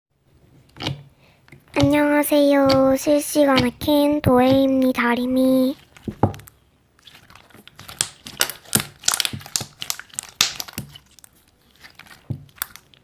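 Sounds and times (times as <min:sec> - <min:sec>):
crinkling and clicking: 0:05.7 - 0:13.0.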